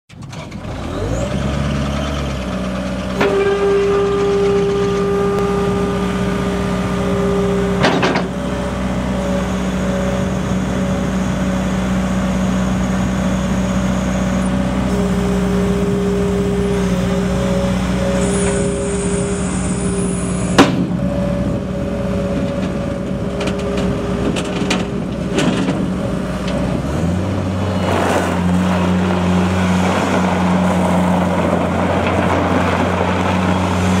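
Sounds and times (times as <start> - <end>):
diesel engine running: 0.1 - 34.0
thin whine: 14.2 - 23.8.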